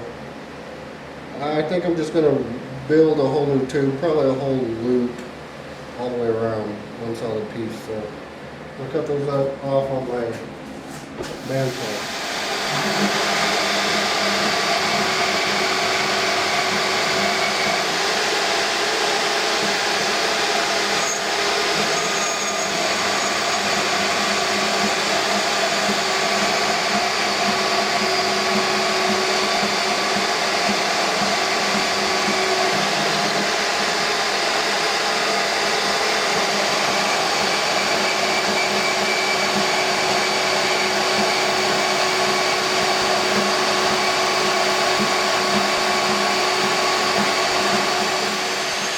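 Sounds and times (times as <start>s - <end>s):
band saw cutting metal: 11.4s - 48.9s.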